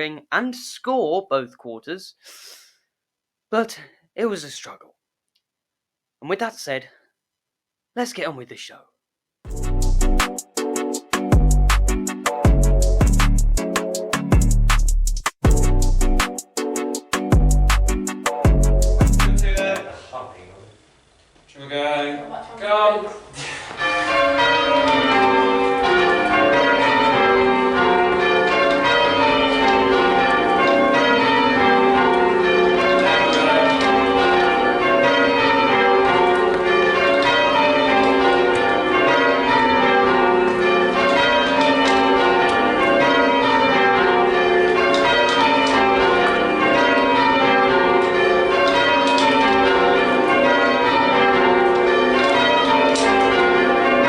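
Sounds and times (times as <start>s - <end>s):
church bells change ringing: 23.8s - 54.0s.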